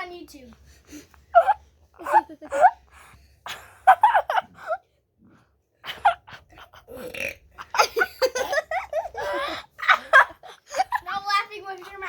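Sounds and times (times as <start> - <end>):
boy burping: 1.4 - 2.8, 6.0 - 8.6
laughter: 2.0 - 2.8, 3.5 - 4.8, 7.6 - 11.0.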